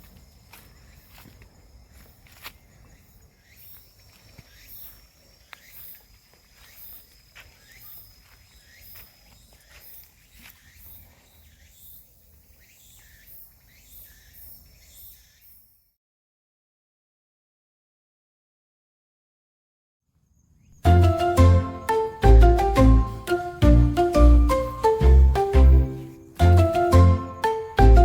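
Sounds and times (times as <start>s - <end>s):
very high insect chirps: 0.0s - 16.0s, 27.2s - 27.8s.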